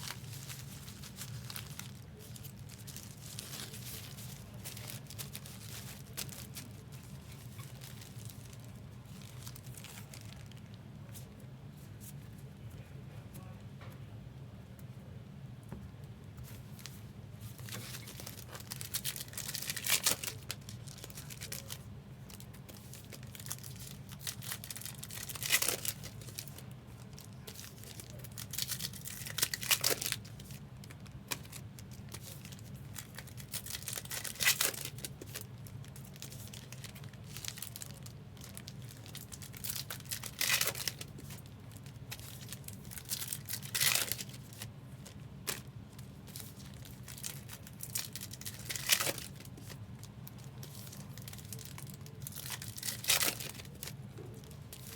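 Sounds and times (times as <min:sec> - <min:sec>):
wrappers tearing open: 0:00.0 - 0:10.7, 0:17.6 - 0:45.7, 0:46.3 - 0:54.9
wrapper rustling: 0:00.0 - 0:11.3, 0:16.4 - 0:54.9.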